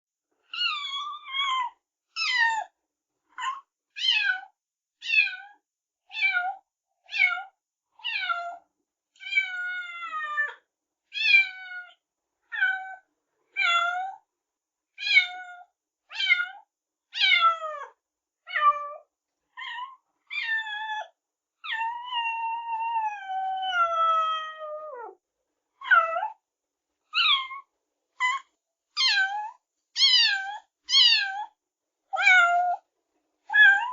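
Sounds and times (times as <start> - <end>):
kittens meowing: 27.2 - 27.6, 28.2 - 31.5, 33.5 - 33.9.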